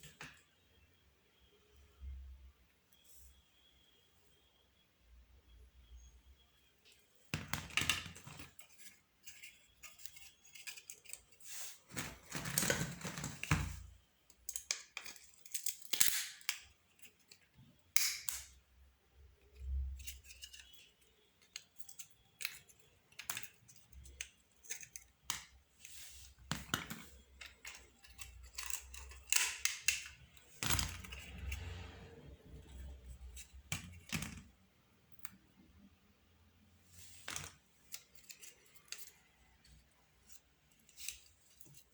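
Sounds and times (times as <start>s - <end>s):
rustling scrapes: 9.2s - 13.4s
plastic clicks and snaps: 14.3s - 16.7s, 17.3s - 18.6s.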